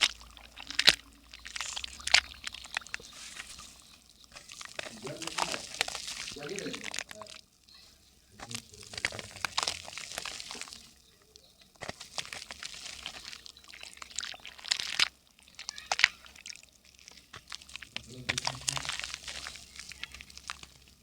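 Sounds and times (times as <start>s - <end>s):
dry mud crackling: 0.0s - 21.0s.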